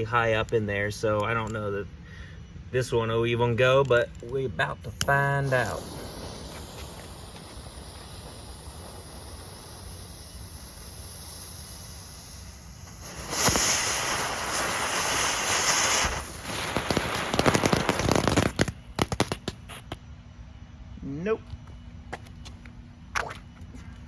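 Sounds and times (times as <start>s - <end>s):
firework crackles: 4.2s - 20.0s
firework sparks hissing: 4.3s - 20.0s.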